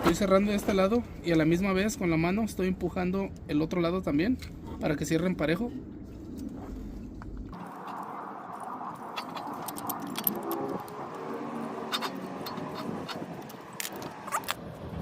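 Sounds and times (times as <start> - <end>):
metal clicks and clinks: 9.1 - 11.2, 11.9 - 14.6.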